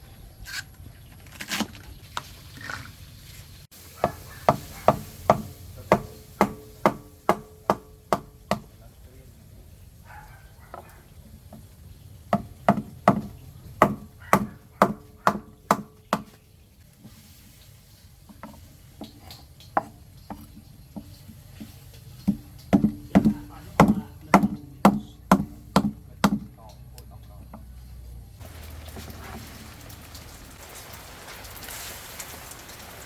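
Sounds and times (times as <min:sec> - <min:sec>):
knife chopping on cutting board: 0:04.0 - 0:08.7, 0:22.2 - 0:26.5.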